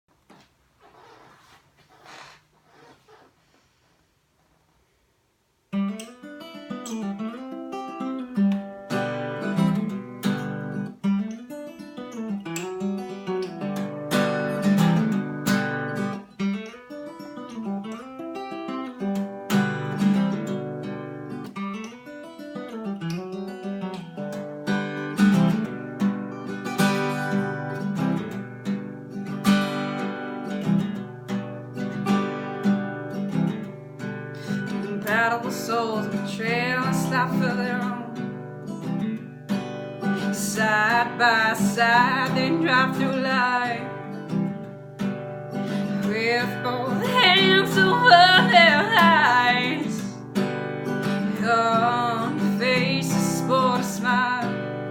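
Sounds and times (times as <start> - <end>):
acoustic guitar strummed and picked: 5.7 - 54.9.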